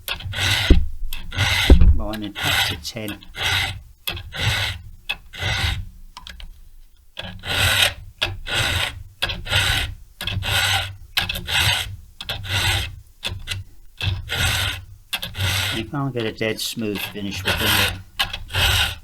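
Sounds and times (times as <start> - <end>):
hand file rasping on chain: 0.1 - 5.9, 7.2 - 19.0.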